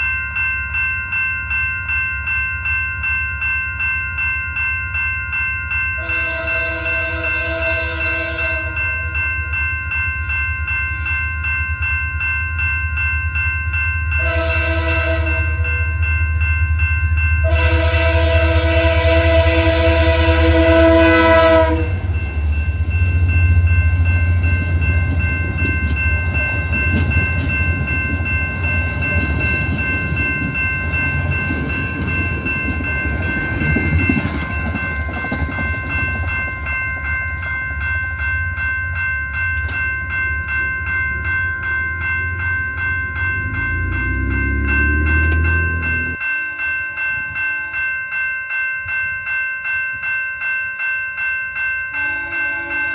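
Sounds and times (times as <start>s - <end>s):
level crossing bells ringing: 0.0s - 52.9s
train horn blast: 6.0s - 8.8s, 14.2s - 15.7s, 17.4s - 22.2s, 43.4s - 46.2s, 52.0s - 52.9s
train rumbling past: 6.0s - 46.3s.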